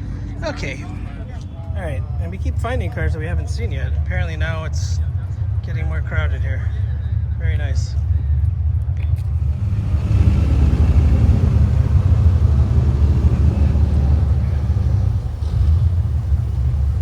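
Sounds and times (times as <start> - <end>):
car engine driving past: 9.2 - 17.0.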